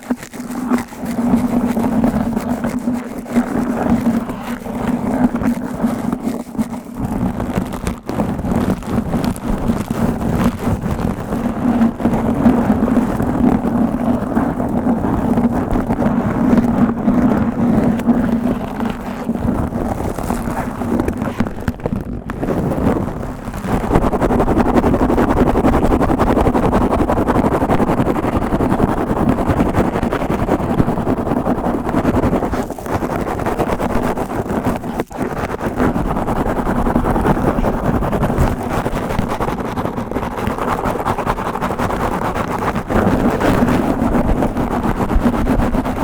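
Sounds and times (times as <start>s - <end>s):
fingers scratching on microphone: 0.0s - 46.0s.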